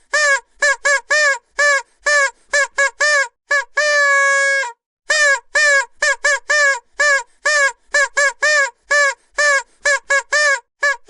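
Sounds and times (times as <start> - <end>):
vuvuzela short toots: 0.1 - 11.0.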